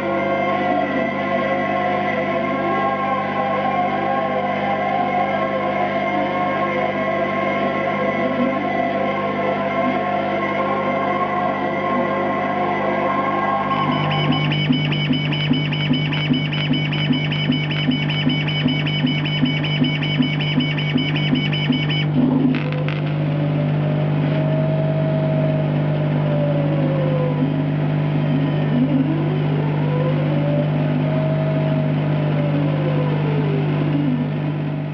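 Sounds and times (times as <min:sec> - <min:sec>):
motors whining in sweeps: 0:00.0 - 0:34.8
steady low hum: 0:00.0 - 0:34.9
rhythmic pulse: 0:00.2 - 0:26.0.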